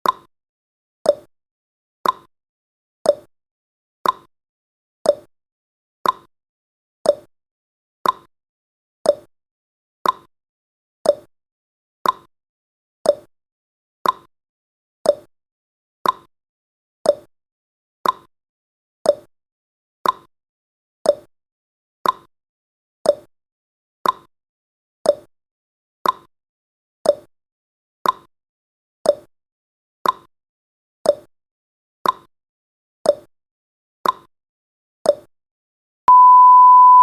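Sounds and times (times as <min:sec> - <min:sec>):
clock tick-tock: 0:02.0 - 0:02.3, 0:06.0 - 0:06.3, 0:08.0 - 0:08.3, 0:09.1 - 0:09.3, 0:10.0 - 0:10.3, 0:12.0 - 0:12.3, 0:14.0 - 0:14.3, 0:16.0 - 0:16.3, 0:18.0 - 0:18.3, 0:20.0 - 0:20.3, 0:22.0 - 0:22.3, 0:24.0 - 0:24.3, 0:26.0 - 0:26.3, 0:28.0 - 0:28.3, 0:30.0 - 0:30.3, 0:32.0 - 0:32.3
steady high beep: 0:36.1 - 0:37.0.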